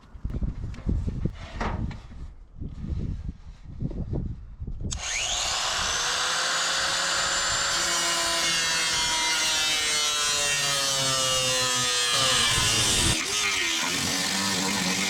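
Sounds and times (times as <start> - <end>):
power saw cutting roofing: 4.9 - 15.0.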